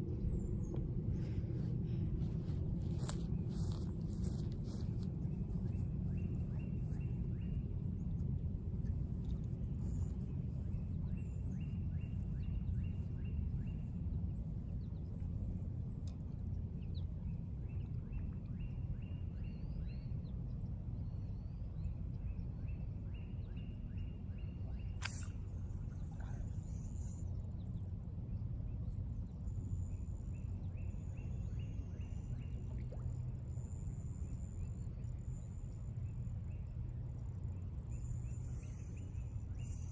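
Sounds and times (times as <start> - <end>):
sharp click: 25.0 - 25.4
faint bird chirps: 28.8 - 39.9.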